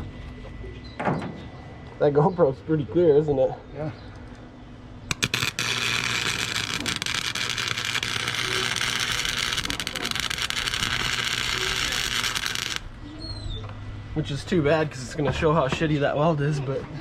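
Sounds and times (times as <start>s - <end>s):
welder arc crackling: 5.1s - 13.0s.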